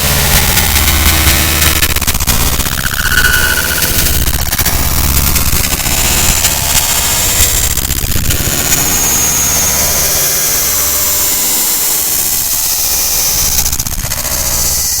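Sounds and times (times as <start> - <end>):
low hum: 0.0 - 9.0
high whine dropping in pitch: 0.0 - 10.0
electrical buzzing and crackling: 0.0 - 14.7.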